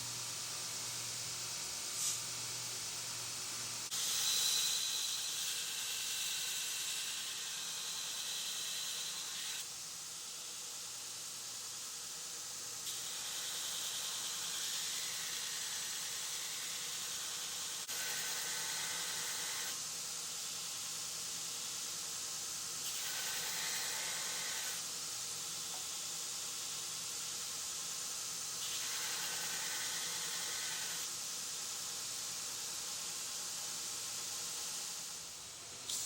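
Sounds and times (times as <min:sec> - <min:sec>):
grinder grinding steel blade: 0:03.9 - 0:09.6, 0:12.9 - 0:19.8, 0:22.8 - 0:24.8, 0:28.6 - 0:31.1.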